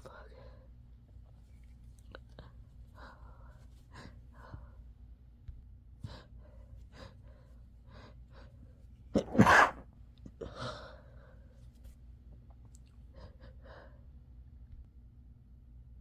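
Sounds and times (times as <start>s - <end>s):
person sneezing: 9.2s - 9.8s.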